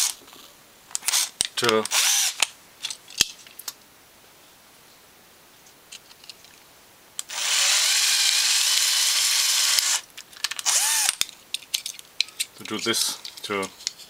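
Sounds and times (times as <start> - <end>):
cordless drill drilling: 1.0 - 1.3, 1.9 - 2.4, 7.2 - 10.0, 10.6 - 11.2.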